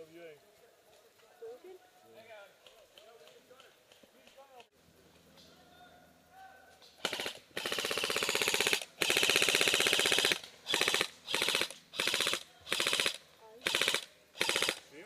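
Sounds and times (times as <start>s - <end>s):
airsoft gun firing bursts: 7.0s - 14.9s.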